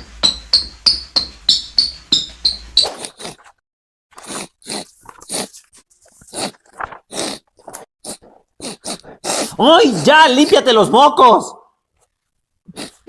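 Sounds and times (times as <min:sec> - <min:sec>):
person sniffing and snorting: 0:02.8 - 0:09.6, 0:12.6 - 0:13.0.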